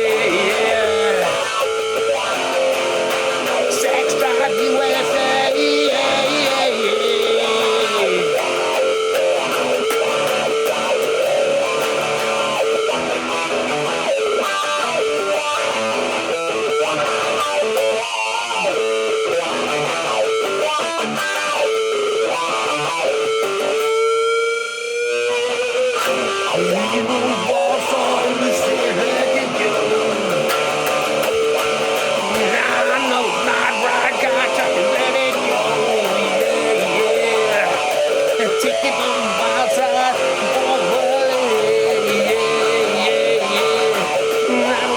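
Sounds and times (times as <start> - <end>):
instrumental rock music: 0.0 - 44.9
guitar note bending upward: 28.3 - 39.5.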